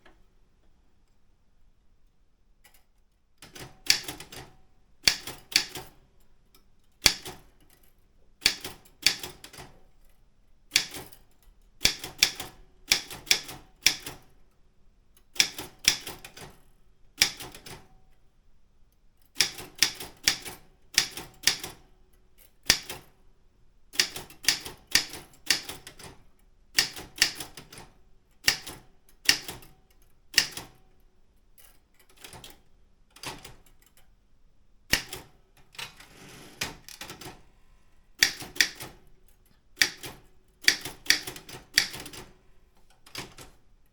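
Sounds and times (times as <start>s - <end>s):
manual typewriter typing: 34.9s - 37.4s, 39.8s - 42.4s, 43.0s - 43.6s.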